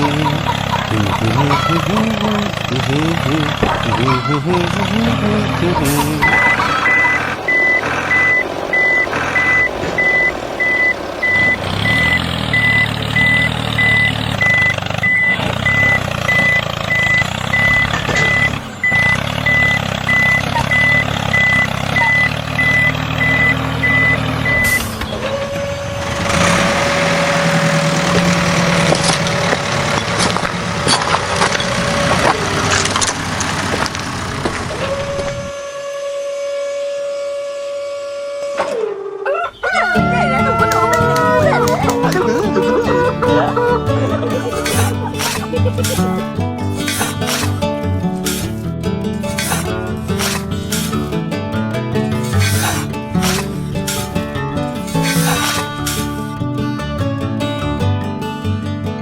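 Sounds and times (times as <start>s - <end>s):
vehicle reversing beeper: 0.0s - 30.4s
low engine hum: 0.0s - 35.9s, 39.7s - 59.0s
whine with mechanical rattle: 6.1s - 23.6s.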